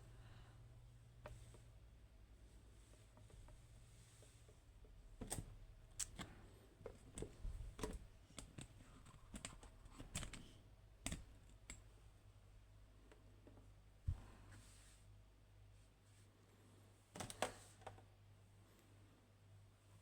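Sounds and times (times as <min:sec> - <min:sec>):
metal and plastic clicks: 0:06.9 - 0:11.9.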